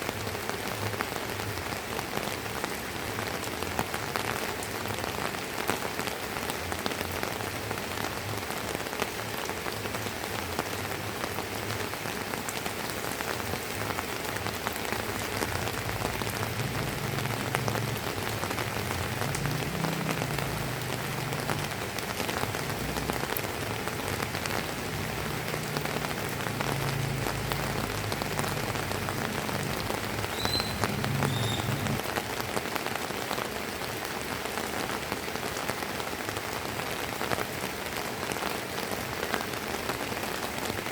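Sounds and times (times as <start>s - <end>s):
rain pattering on a terrace: 0.0s - 40.9s
short high chirps: 30.3s - 31.8s.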